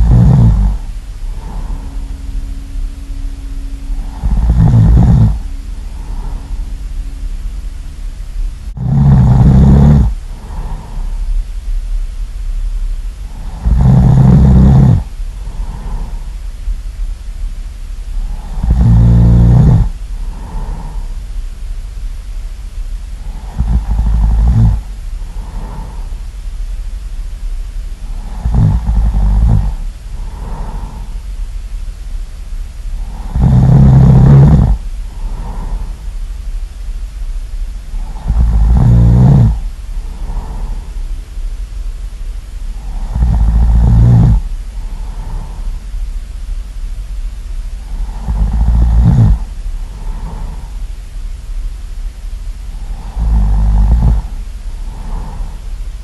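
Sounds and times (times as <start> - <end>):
person snoring: 0.0 - 2.5, 3.3 - 6.8, 8.7 - 11.3, 13.2 - 16.3, 18.2 - 21.2, 23.2 - 26.2, 28.0 - 31.2, 32.9 - 36.0, 38.0 - 41.0, 42.8 - 45.8, 47.9 - 50.8, 52.7 - 55.7
low steady hum: 0.0 - 56.0
soft breaths: 0.0 - 56.0.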